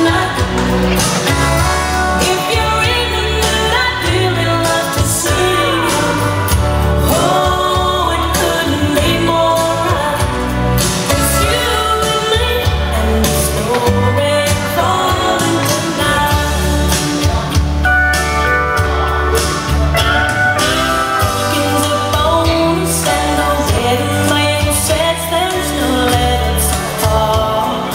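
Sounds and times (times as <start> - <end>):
person singing a song: 0.0 - 27.9
steady bass beat: 0.1 - 4.6.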